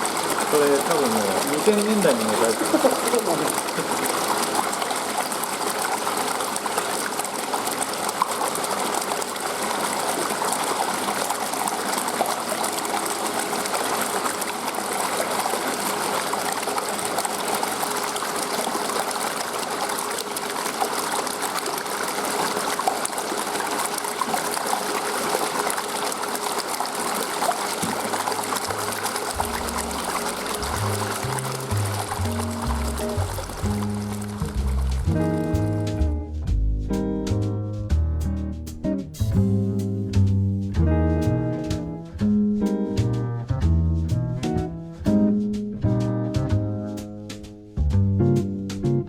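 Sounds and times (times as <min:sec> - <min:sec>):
water running into pond: 0:00.0 - 0:37.5.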